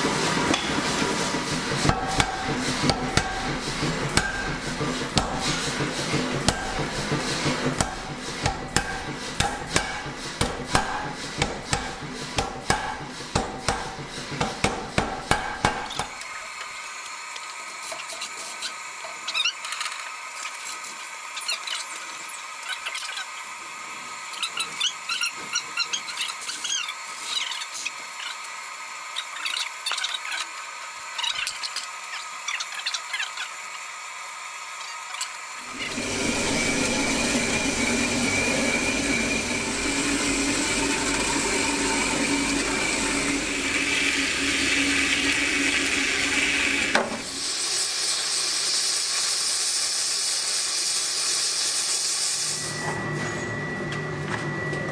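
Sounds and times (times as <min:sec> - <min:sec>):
hammer striking steel on anvil: 0:01.8 - 0:05.7, 0:06.4 - 0:16.1.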